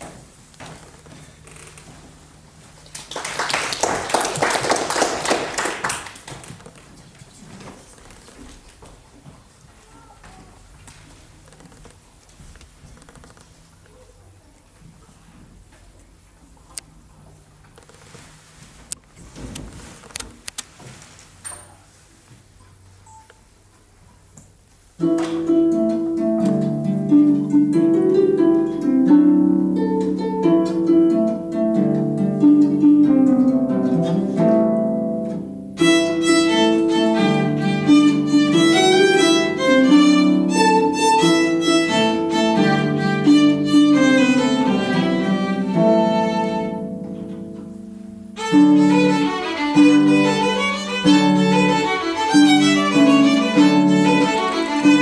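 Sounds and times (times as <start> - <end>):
low accompanying instrument: 25.0 - 55.0
violin playing a dance tune: 35.8 - 46.9, 48.4 - 55.0.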